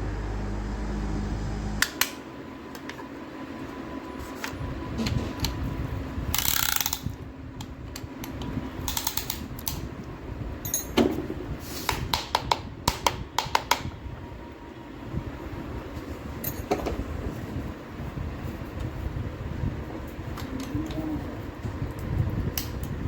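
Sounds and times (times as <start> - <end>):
metal tools clicking and clattering: 10.6 - 11.0.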